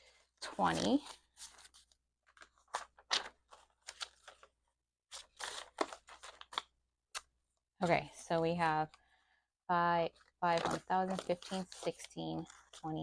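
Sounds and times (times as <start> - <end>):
banknotes rustling: 0.6 - 6.7, 10.2 - 13.0.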